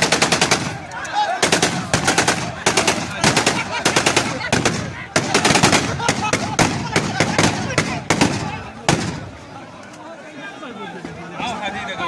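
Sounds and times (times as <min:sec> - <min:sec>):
automatic gunfire bursts: 0:00.0 - 0:09.2
people's voices: 0:00.0 - 0:12.0.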